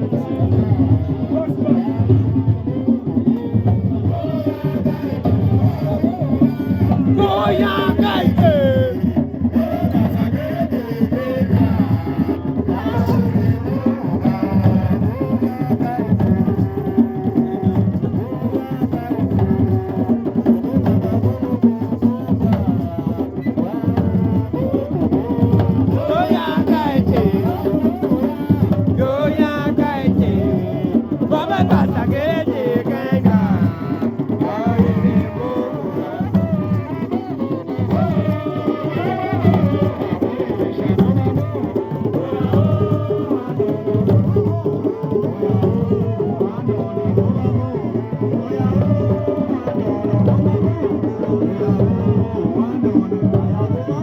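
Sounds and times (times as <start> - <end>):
music with drum beat and melody: 0.0 - 54.0.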